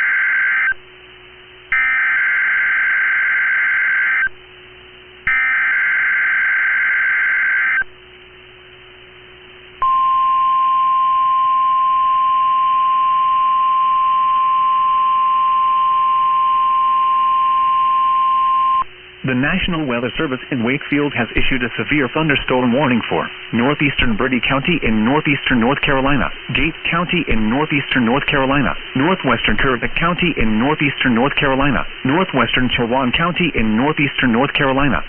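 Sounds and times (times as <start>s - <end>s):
steady warning alarm tone: 0.0s - 0.8s, 1.7s - 4.4s, 5.3s - 7.9s, 9.8s - 18.9s.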